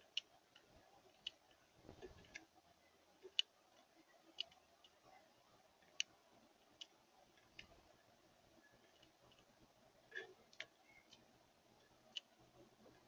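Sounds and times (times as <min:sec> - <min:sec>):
faint sharp clicks: 0:10.2 - 0:13.0.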